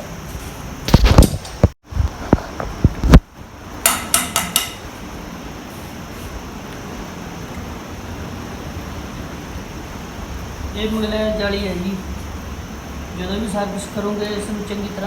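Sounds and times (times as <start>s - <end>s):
steady hiss: 0.0s - 15.0s
metal tools knocking: 3.9s - 4.9s.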